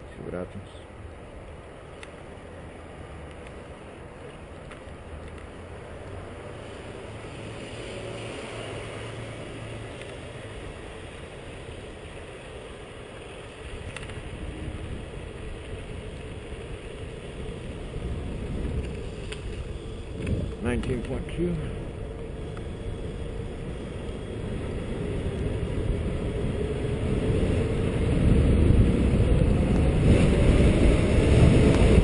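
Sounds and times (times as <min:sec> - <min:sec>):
road rumble: 0:00.0 - 0:32.0
wind rush: 0:13.5 - 0:32.0.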